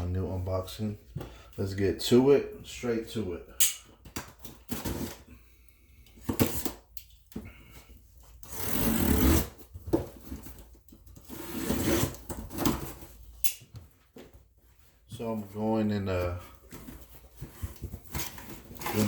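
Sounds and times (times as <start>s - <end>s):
packaging scraping and rustling: 4.3s - 5.3s, 8.4s - 13.3s, 16.6s - 19.0s.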